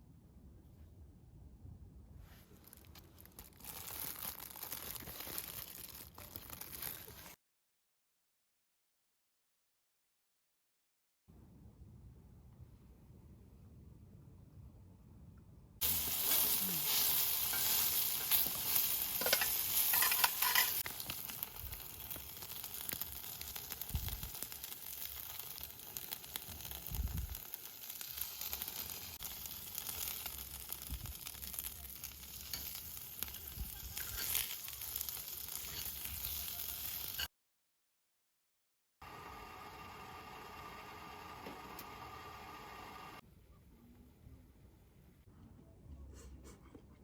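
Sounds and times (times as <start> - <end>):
campfire crackling and popping: 15.8 - 37.2.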